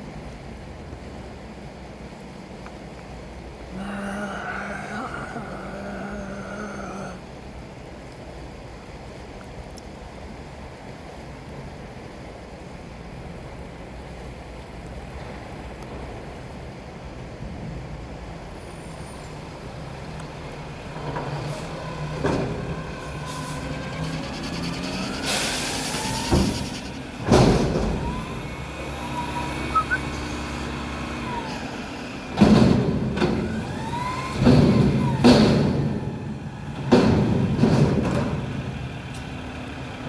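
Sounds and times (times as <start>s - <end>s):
diesel engine running: 18.5s - 40.0s
air brake hiss: 21.4s - 32.2s
whining pitches: 21.8s - 32.2s.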